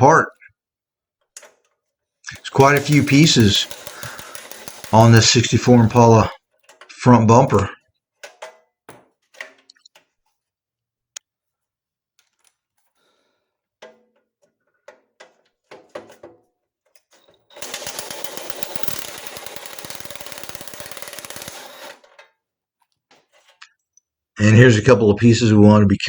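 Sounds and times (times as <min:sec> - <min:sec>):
metal parts clanking: 0:02.3 - 0:06.3, 0:17.2 - 0:22.0
power wrench hammering: 0:02.3 - 0:06.3, 0:17.5 - 0:22.1.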